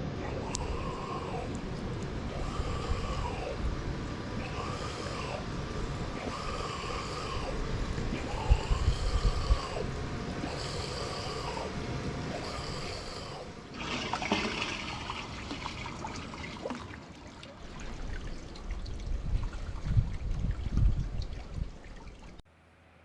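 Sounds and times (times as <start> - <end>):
wind rumble on microphone: 0.0 - 13.1, 17.8 - 22.4
water trickling and pouring: 13.8 - 22.4.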